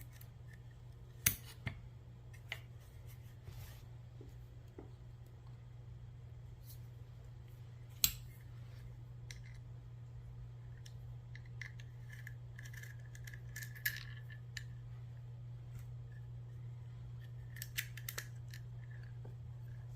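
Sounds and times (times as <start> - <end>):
steady low hum: 0.0 - 19.9
small clicks and scrapes: 10.8 - 14.7.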